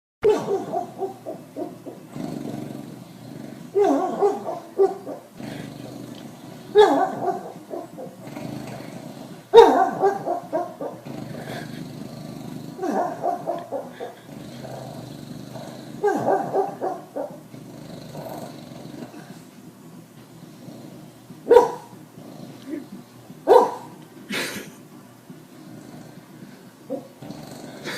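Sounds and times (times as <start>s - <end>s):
sleeping dog barking and growling: 0.2s - 27.9s.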